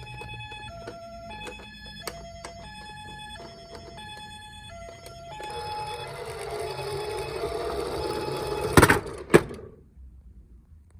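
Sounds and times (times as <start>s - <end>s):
toy two-tone siren: 0.0s - 8.9s
toy car rolling down slope: 5.3s - 9.7s.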